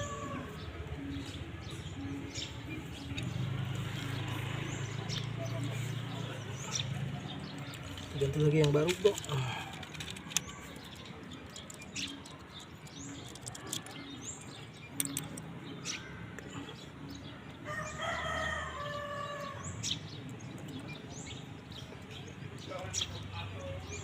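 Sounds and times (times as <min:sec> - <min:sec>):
rooster crowing: 0:00.0 - 0:00.6, 0:17.6 - 0:19.6.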